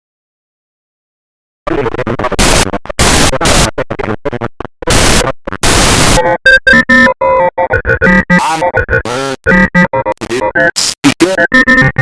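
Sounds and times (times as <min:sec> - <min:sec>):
loud harsh noise: 0:01.7 - 0:03.8, 0:04.8 - 0:07.0.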